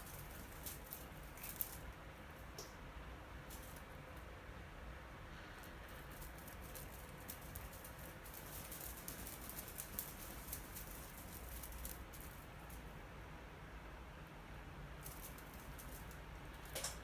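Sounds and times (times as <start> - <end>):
cat toy clicking and rattling: 0.0 - 1.9, 5.7 - 12.9, 15.0 - 17.0.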